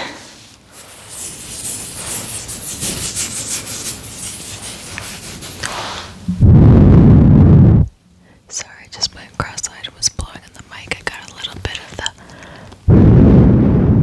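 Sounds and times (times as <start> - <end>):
bath bomb scraping microphone: 0.6 - 8.0, 8.9 - 12.8
air blast on microphone: 12.9 - 14.0.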